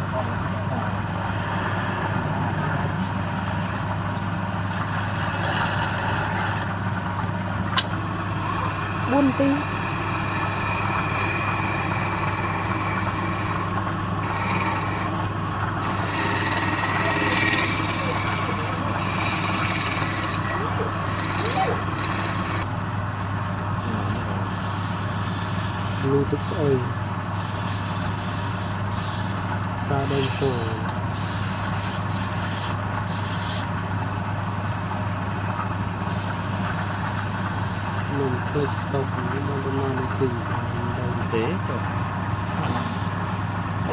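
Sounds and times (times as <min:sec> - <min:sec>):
lathe motor running: 0:00.0 - 0:43.9.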